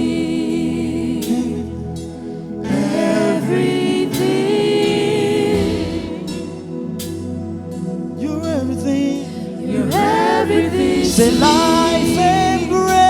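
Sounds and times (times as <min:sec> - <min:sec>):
voices singing gospel: 0:00.0 - 0:13.0
cymbal crashes: 0:05.5 - 0:07.3, 0:10.7 - 0:13.0
band accompaniment: 0:10.8 - 0:13.0.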